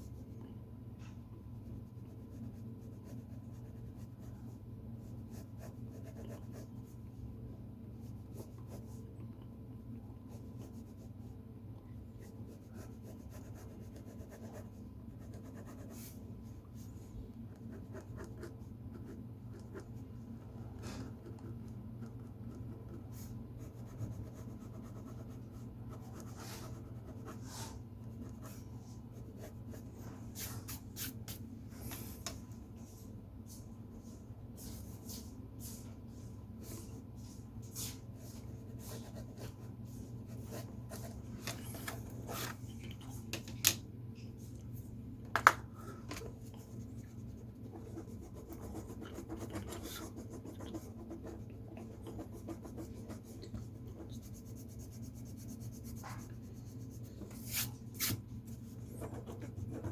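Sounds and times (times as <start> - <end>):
low background hum: 0.0 - 59.9
pen scratching on paper: 46.6 - 56.8, 57.4 - 59.9.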